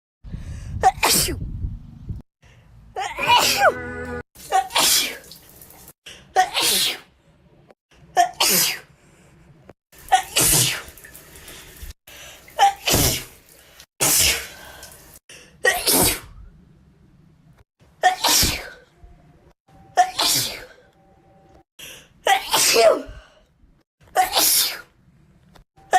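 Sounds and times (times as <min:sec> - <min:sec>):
woman sneezing: 0:06.4 - 0:07.1, 0:08.2 - 0:08.9, 0:15.6 - 0:16.3, 0:18.0 - 0:18.8, 0:22.3 - 0:23.2, 0:24.2 - 0:24.9.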